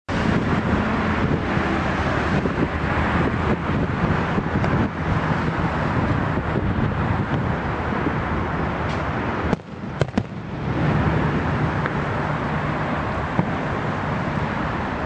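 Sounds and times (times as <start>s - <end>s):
noisy rumble: 0.1s - 15.0s
fireworks cracking: 9.5s - 10.9s.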